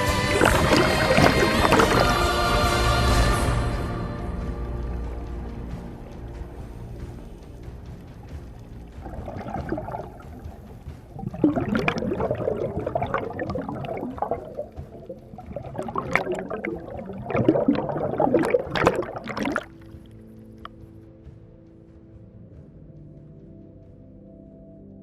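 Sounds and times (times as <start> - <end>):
bubbles gurgling underwater: 0.3 - 2.2, 8.9 - 20.0.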